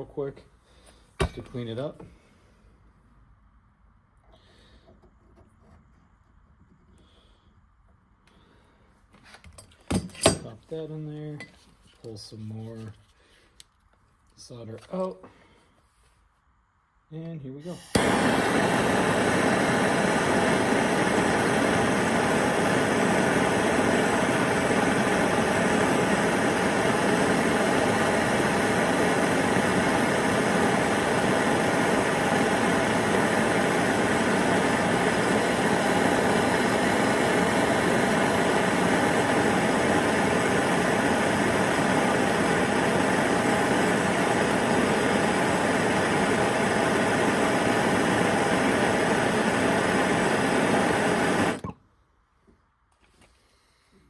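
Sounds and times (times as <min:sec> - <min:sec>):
gas torch flame hissing: 0:17.6 - 0:51.7.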